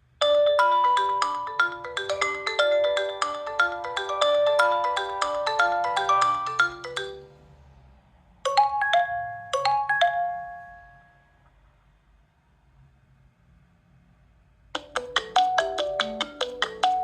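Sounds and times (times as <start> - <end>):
bell-like chimes: 0.2 - 7.3
marimba-like ringtone: 0.2 - 7.4, 8.5 - 11.2, 14.8 - 17.0.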